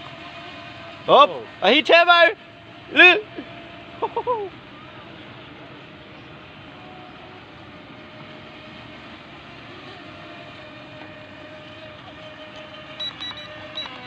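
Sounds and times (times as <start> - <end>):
outdoor noise: 0.0 - 14.0
rc boat motors whining: 0.0 - 14.0
short high beeps: 13.0 - 14.0.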